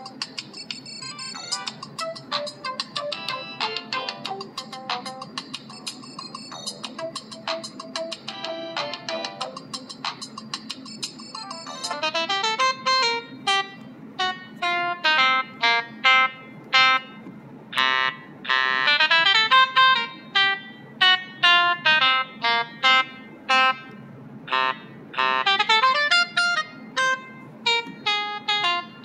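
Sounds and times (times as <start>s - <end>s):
polyphonic phone ringtone: 0.0s - 17.2s.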